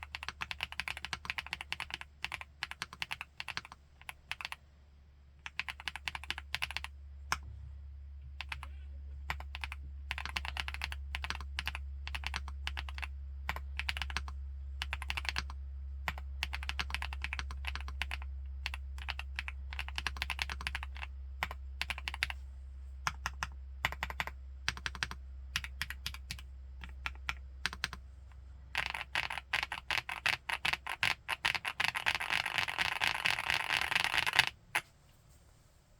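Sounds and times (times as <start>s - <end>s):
mechanical keyboard typing: 0.0s - 4.6s, 5.4s - 7.4s, 8.4s - 8.7s, 9.3s - 22.4s, 23.1s - 28.0s, 28.7s - 34.6s
faint low hum: 0.0s - 35.9s.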